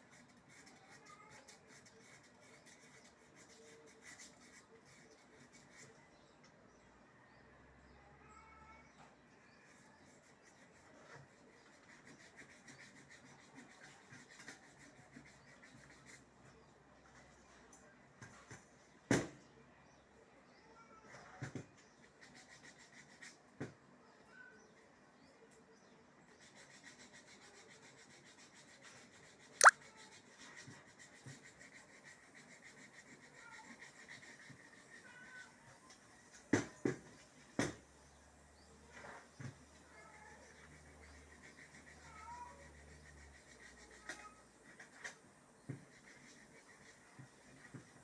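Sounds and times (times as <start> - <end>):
faint rubbing strokes: 26.4 - 48.0.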